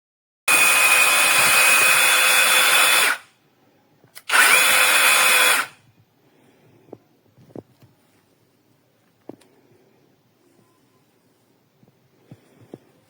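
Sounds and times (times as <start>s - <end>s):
electric chainsaw whining: 0.5s - 3.2s, 4.3s - 5.8s.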